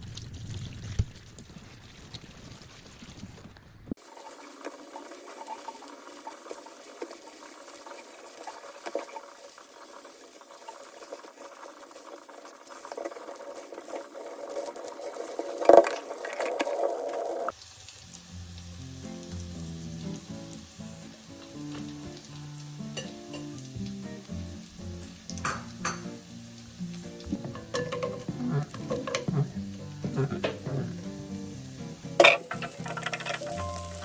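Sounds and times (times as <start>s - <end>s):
food frying in a pan: 0.0s - 34.0s
soft background music: 19.0s - 34.0s
utensil clicking against pan: 27.4s - 31.0s, 32.2s - 34.0s.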